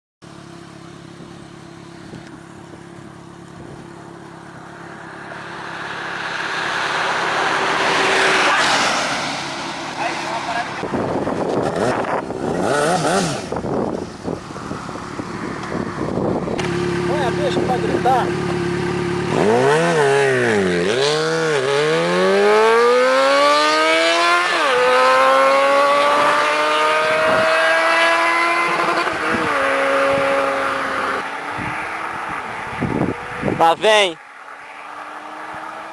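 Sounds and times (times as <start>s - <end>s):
motorcycle engine accelerating hard: 0.3s - 33.7s
road vehicle passing at speed: 2.8s - 35.9s.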